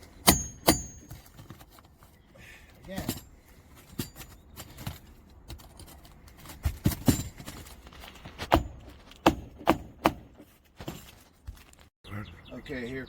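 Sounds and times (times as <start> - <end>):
hammer striking metal bar: 0.2 - 1.1.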